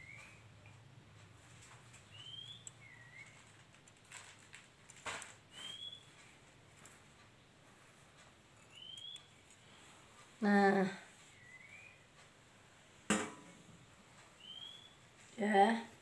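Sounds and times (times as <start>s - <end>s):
bird chirping: 0.0s - 0.6s, 1.5s - 3.6s, 5.4s - 6.4s, 8.5s - 10.1s, 11.2s - 12.3s, 14.2s - 15.1s.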